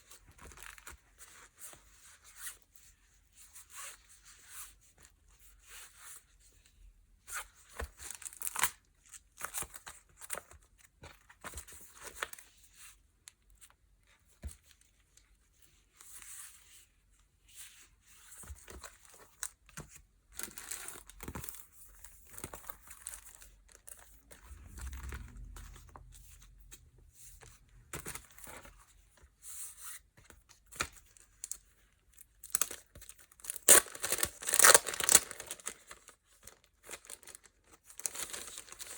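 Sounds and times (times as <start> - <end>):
low bump: 24.3 - 28.6
packaging crinkling and tearing: 32.4 - 38.9.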